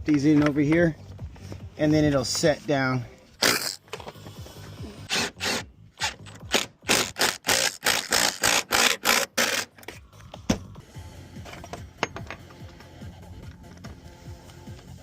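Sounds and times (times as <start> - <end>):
hand tool ratcheting and scraping: 3.4 - 4.4, 5.1 - 10.1.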